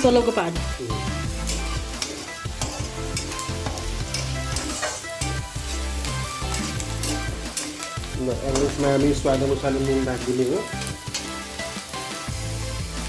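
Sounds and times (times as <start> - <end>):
vegetables sizzling in hot oil: 0.0 - 13.0
spatula scraping against pan: 1.2 - 9.0.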